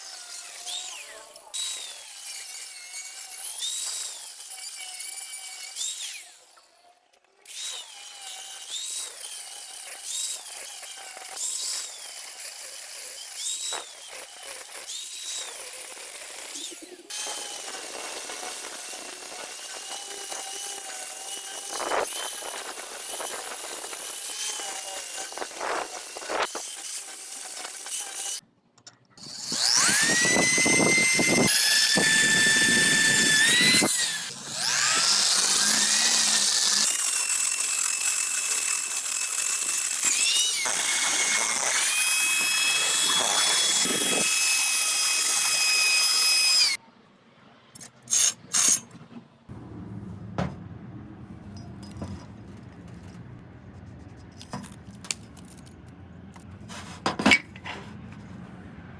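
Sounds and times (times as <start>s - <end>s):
power tool whining at high speed: 29.2s - 46.8s
workshop noise: 39.4s - 58.9s.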